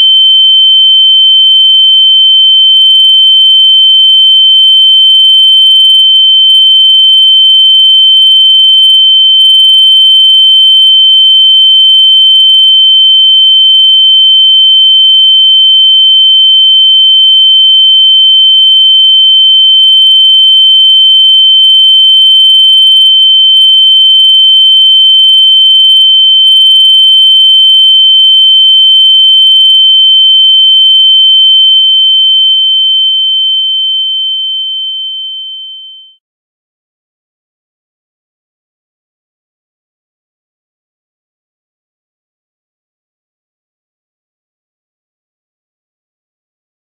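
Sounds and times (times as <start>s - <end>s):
high-pitched sine tone: 0.0s - 36.2s.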